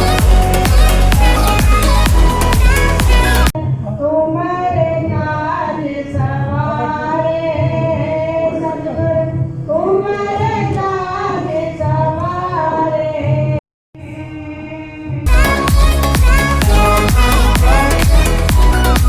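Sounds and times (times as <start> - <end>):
instruments with low beat: 0.0 - 3.5, 15.3 - 19.0
people singing long notes: 0.0 - 3.5, 14.0 - 19.0.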